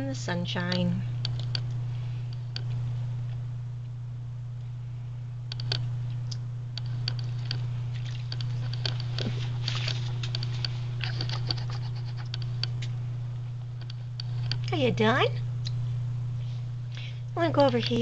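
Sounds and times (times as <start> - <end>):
low hum: 0.0 - 18.0
bird splashing in water: 7.9 - 8.4.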